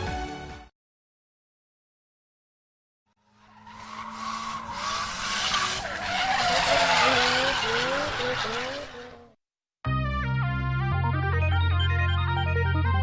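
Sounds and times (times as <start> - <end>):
vehicle brakes skidding screech: 3.2 - 9.2.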